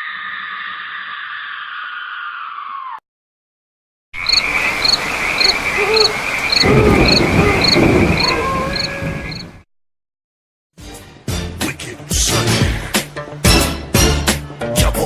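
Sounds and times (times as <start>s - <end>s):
crickets trilling: 4.2s - 9.6s
frogs croaking: 4.2s - 9.6s.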